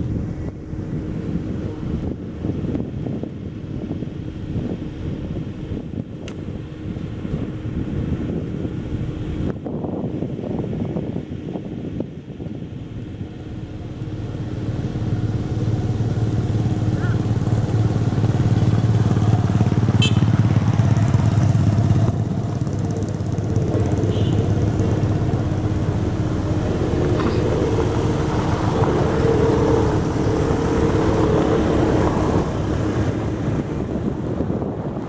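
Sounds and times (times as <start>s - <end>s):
road roller diesel engine droning: 12.2s - 35.0s.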